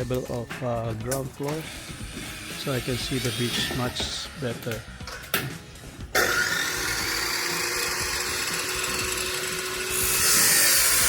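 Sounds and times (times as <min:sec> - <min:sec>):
power tool motor running: 0:01.5 - 0:04.4, 0:06.1 - 0:11.0.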